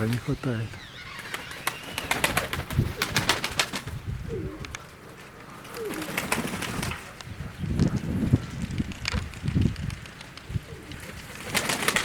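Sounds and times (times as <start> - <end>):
pigeons cooing: 0.0 - 8.2, 10.6 - 12.0.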